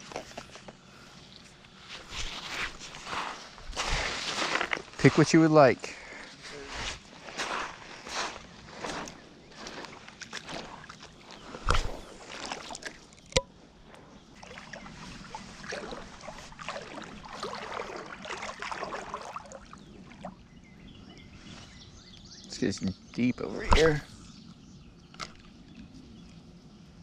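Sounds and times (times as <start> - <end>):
water sloshing and splashing: 8.7 - 13.4, 14.3 - 20.5.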